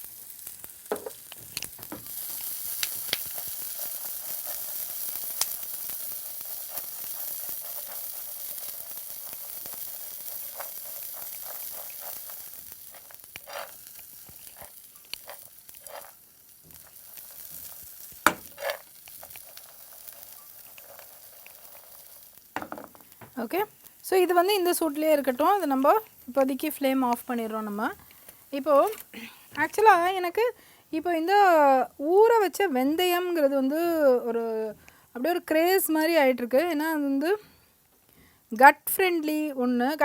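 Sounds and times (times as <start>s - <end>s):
food sizzling in oil: 0.0s - 37.3s
spatula scraping a pan: 6.7s - 22.3s.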